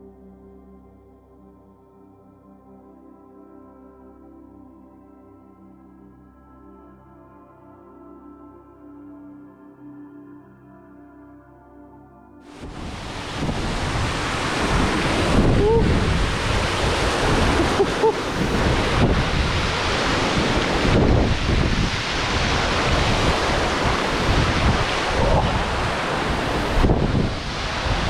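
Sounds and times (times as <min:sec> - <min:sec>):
waterfall roaring: 0:12.6 - 0:28.0
wind buffeting microphone: 0:12.6 - 0:28.0.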